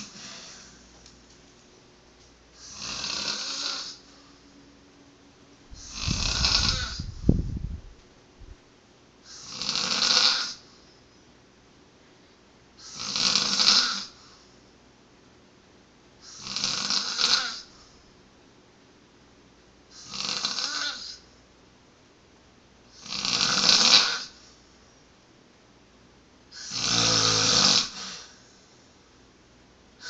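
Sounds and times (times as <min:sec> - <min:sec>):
man snoring: 0:02.6 - 0:04.0, 0:05.8 - 0:07.1, 0:09.3 - 0:10.6, 0:12.8 - 0:14.2, 0:16.3 - 0:17.7, 0:20.0 - 0:21.2, 0:23.0 - 0:24.4, 0:26.6 - 0:28.4.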